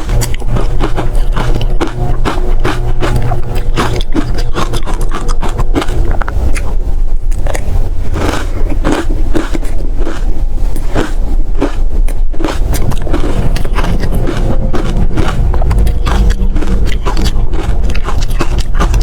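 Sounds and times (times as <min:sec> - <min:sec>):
crunchy bites into frozen ice: 0:07.4 - 0:19.0.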